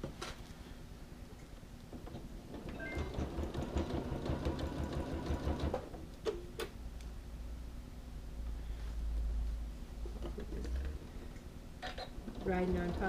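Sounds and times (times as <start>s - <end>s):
sewing machine stitching: 2.6s - 5.9s, 11.9s - 13.0s.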